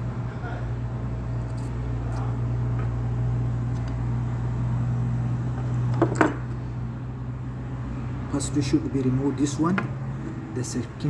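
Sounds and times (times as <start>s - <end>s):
low mechanical hum: 0.0s - 11.0s.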